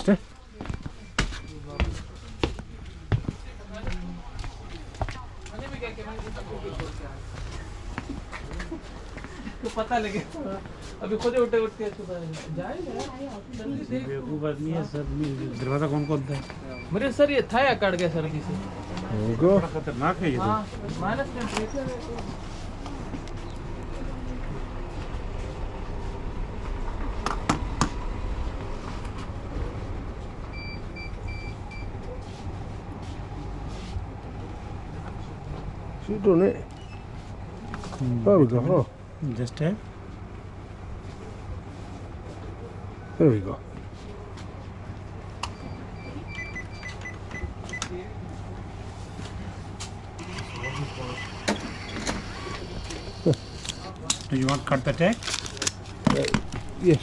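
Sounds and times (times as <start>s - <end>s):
short electronic beeps: 45.5s - 47.8s.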